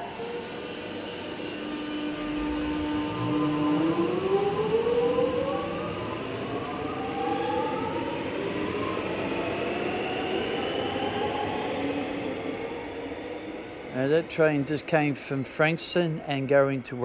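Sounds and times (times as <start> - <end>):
train rumble: 0.0 - 4.4
traction motor whine rising: 0.8 - 6.0.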